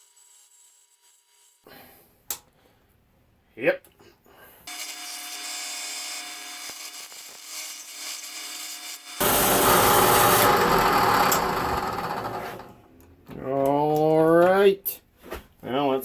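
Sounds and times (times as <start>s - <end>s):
power tool cutting plastic: 4.7s - 12.8s.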